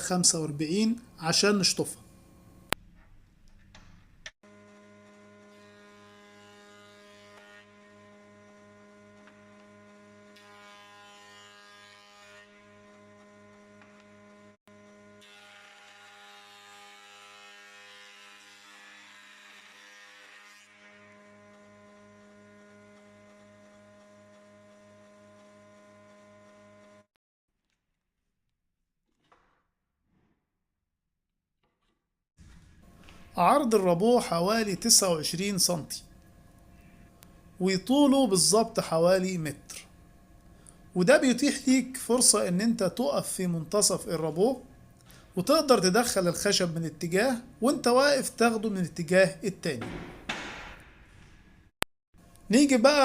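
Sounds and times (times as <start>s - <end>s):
faint electrical hum: 0.0s - 4.3s.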